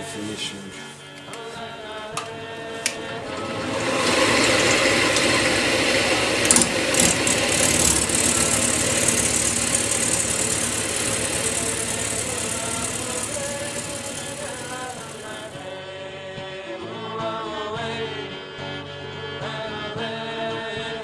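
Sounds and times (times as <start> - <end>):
wood lathe running: 3.0 - 15.7.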